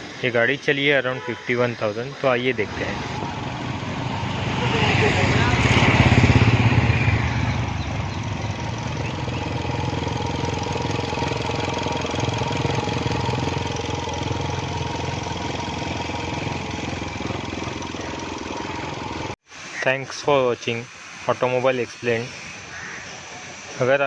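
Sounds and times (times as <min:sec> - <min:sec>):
car engine idling: 0:02.4 - 0:19.4
fast engine ticking: 0:02.5 - 0:19.4
thin steady whine: 0:08.4 - 0:22.8.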